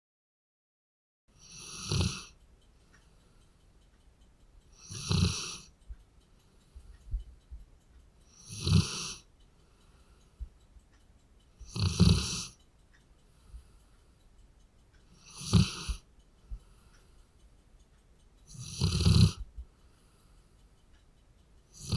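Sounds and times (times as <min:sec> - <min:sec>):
dog snoring: 0:01.4 - 0:02.4, 0:04.7 - 0:05.7, 0:08.3 - 0:09.3, 0:11.6 - 0:12.6, 0:15.1 - 0:16.8, 0:18.5 - 0:19.5, 0:21.7 - 0:21.9.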